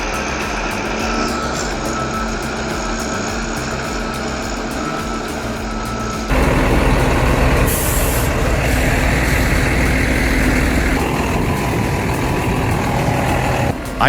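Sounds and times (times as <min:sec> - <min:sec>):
heavy diesel machinery droning: 0:00.1 - 0:14.0
short sharp air hiss: 0:06.3 - 0:11.7.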